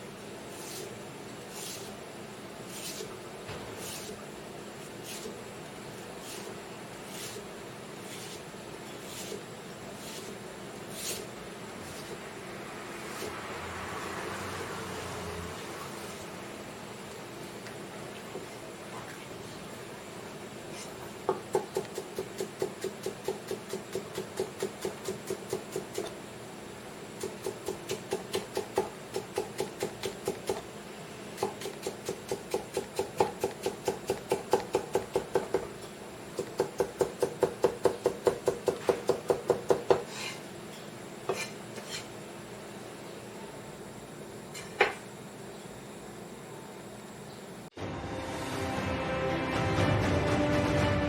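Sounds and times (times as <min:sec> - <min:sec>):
knife chopping on cutting board: 0:21.3 - 0:26.1, 0:36.4 - 0:40.4.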